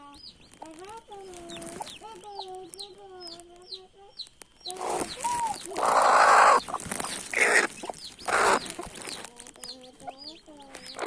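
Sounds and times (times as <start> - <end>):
chicks peeping: 0.0 - 11.0
hen squawking: 4.8 - 9.0.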